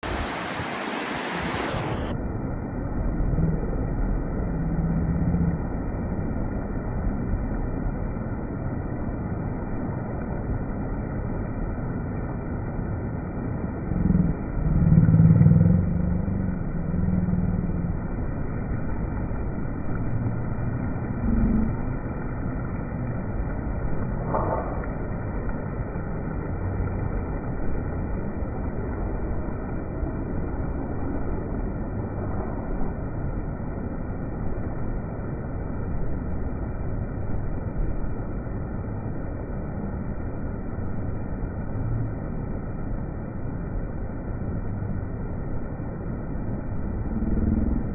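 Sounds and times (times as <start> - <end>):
sea waves washing: 0.0 - 7.4.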